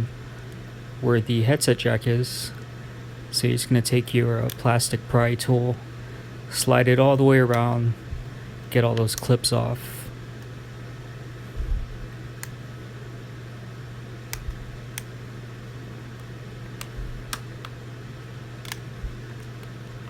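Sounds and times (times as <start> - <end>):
steady low hum: 0.0 - 20.0
plastic clips snapping: 12.1 - 12.6, 14.3 - 15.2, 16.1 - 17.8, 18.6 - 20.0.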